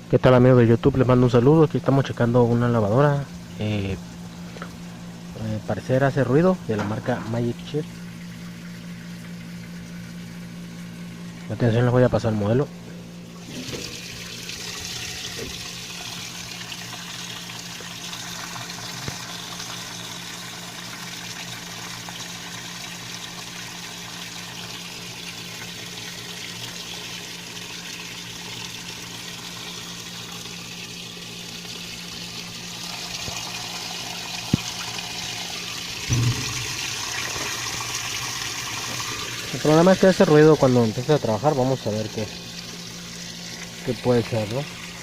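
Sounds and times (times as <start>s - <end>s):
low steady hum: 0.0s - 45.0s
water rushing into washing machine: 13.3s - 45.0s.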